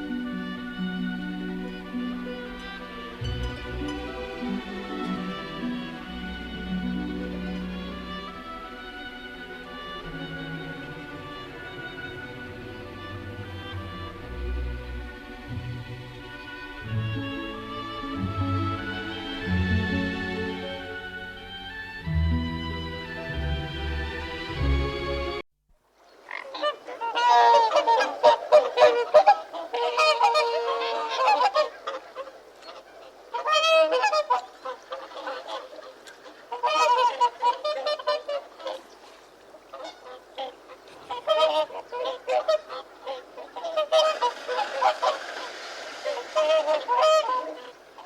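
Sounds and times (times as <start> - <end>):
waterfowl honking: 0.0 - 22.0, 26.2 - 48.0.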